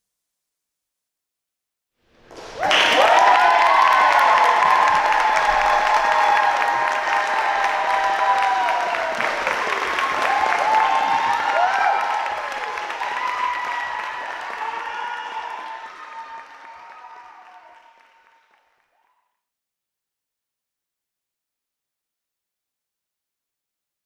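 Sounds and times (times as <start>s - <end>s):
audience applauding: 2.3s - 19.1s
cheers and whoops: 2.6s - 18.4s.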